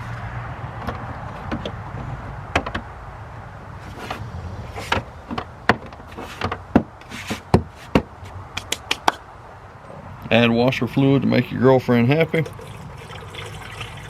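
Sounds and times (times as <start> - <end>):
short scrapes: 3.8 - 5.2, 6.1 - 8.9.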